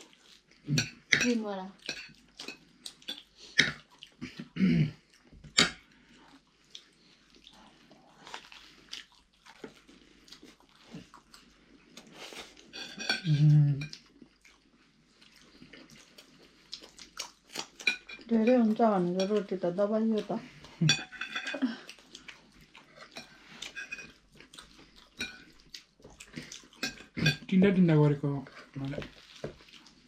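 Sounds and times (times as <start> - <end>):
cutlery clinking on plates: 12.7 - 13.9, 20.8 - 21.6, 23.1 - 24.2, 25.2 - 25.5, 26.8 - 27.5.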